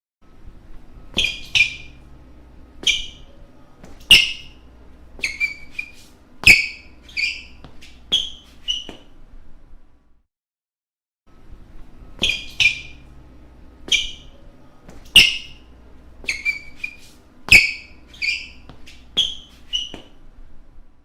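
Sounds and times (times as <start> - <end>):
shoes squeaking on court floor: 1.1 - 2.1, 2.8 - 9.2, 12.1 - 13.2, 13.8 - 20.2.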